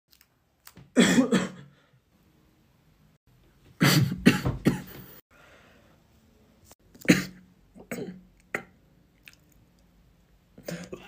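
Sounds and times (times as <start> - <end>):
person coughing: 1.0 - 1.8, 3.8 - 5.1, 7.0 - 8.7, 10.6 - 11.0.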